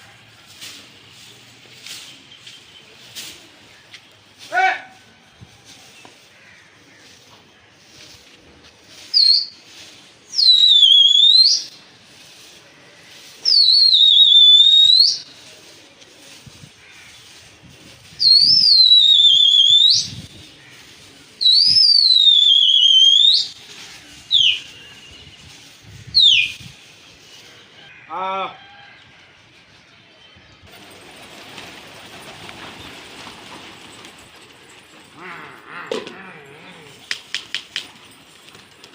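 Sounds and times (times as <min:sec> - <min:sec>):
person whistling shrilly: 0:18.2 - 0:20.1.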